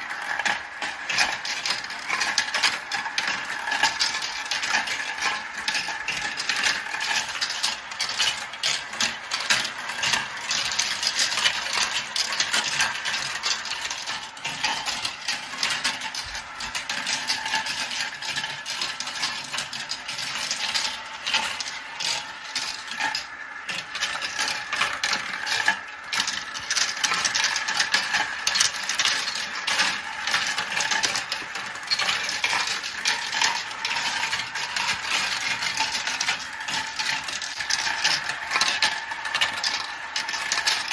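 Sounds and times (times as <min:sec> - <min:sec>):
marbles rolling and clattering: 0:00.0 - 0:40.9.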